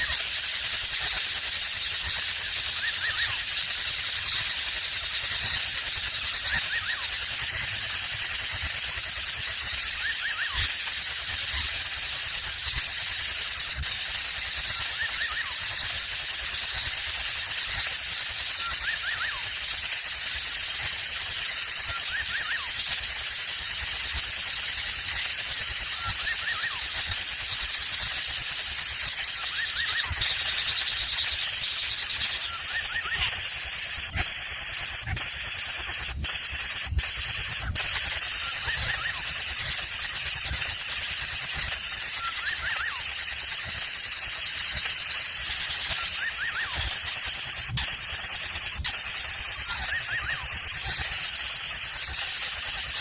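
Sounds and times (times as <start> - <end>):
faint short chirps: 0.0 - 53.0
steady high-pitched hiss: 0.0 - 53.0
sharp clicks: 18.6 - 53.0.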